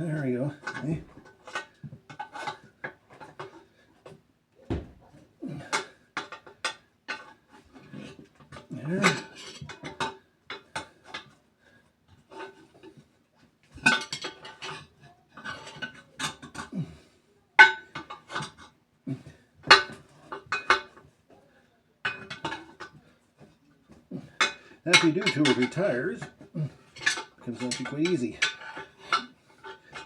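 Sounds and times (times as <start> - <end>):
metal bars clanking on wheel rim: 5.5 - 11.3, 13.7 - 16.8, 17.6 - 18.7, 19.6 - 21.1, 22.0 - 23.5, 24.2 - 30.0.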